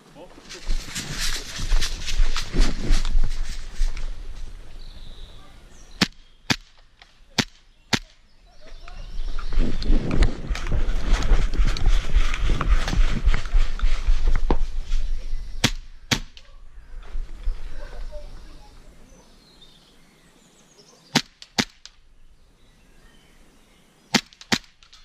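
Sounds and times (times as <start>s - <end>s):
rustling handling noise: 0.3s - 4.7s
airsoft gun shots: 6.0s - 8.2s, 15.6s - 16.4s, 21.1s - 21.9s.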